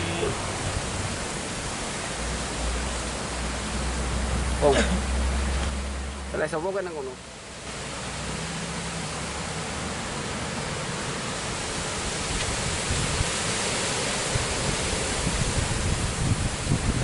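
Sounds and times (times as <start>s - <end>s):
strong wind on microphone: 0.0s - 1.9s, 11.4s - 17.0s.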